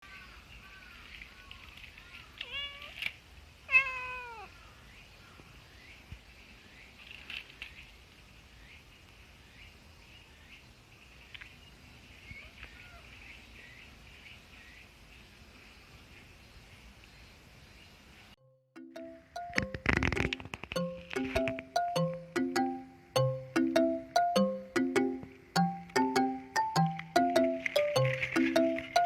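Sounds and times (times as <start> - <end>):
cat meowing: 2.4 - 3.0, 3.7 - 4.5.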